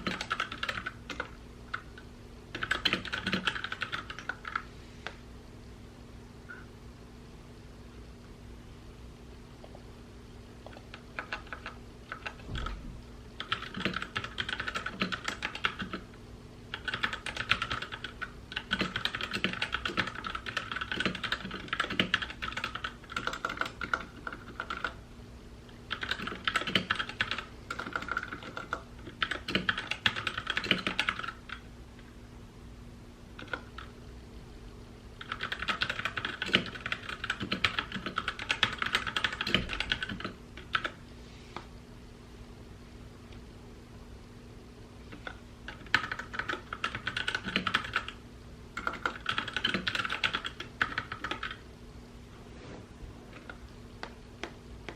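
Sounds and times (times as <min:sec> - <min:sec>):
mechanical keyboard typing: 0:00.0 - 0:04.6, 0:10.7 - 0:12.8, 0:13.4 - 0:16.1, 0:16.7 - 0:25.0, 0:25.9 - 0:31.6, 0:33.4 - 0:33.9, 0:35.2 - 0:41.0, 0:45.1 - 0:48.2, 0:48.8 - 0:51.6.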